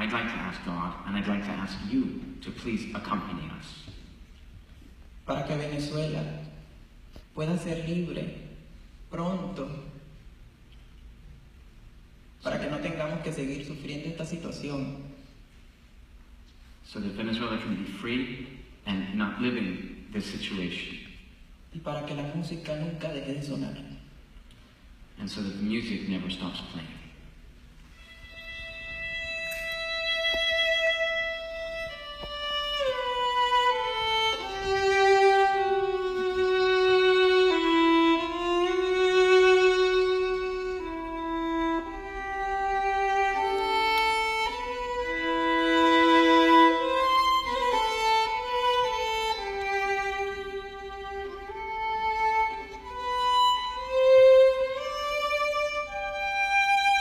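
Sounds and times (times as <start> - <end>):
solo violin slow melody: 27.8 - 57.0.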